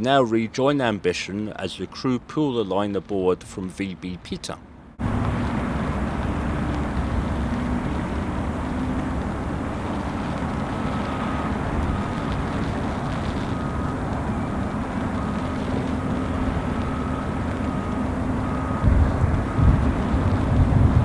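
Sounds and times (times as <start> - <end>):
faint hum: 0.0 - 21.0
ship engines rumbling: 0.0 - 21.0
heavy rain: 5.0 - 21.0.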